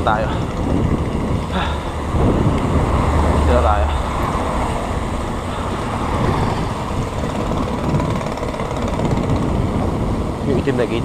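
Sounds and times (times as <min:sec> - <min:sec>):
vehicle engines running: 0:00.0 - 0:11.0
wind rumble on microphone: 0:00.0 - 0:11.0.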